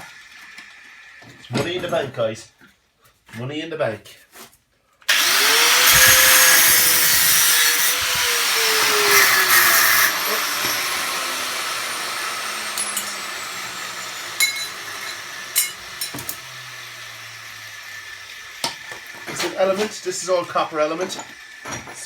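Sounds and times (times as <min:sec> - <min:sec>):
power cutting tool cutting metal: 0:05.1 - 0:22.0
sharp metal clinks: 0:14.4 - 0:16.2.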